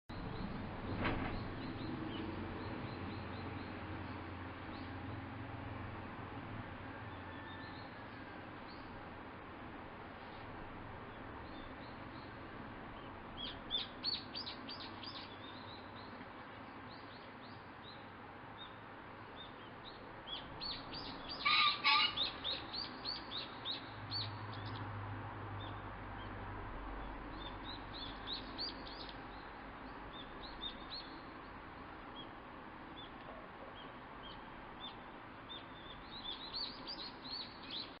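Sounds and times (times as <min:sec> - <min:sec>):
small birds chirping: 0:10.3 - 0:24.9, 0:25.6 - 0:38.0
pheasant crowing: 0:20.7 - 0:23.0.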